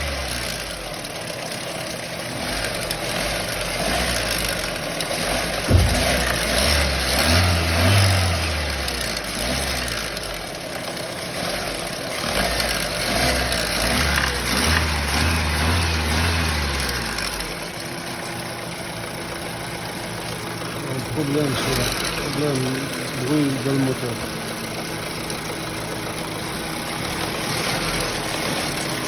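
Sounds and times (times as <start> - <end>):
petrol engine running: 0.0 - 29.0
sharp engine knock: 5.6 - 8.0.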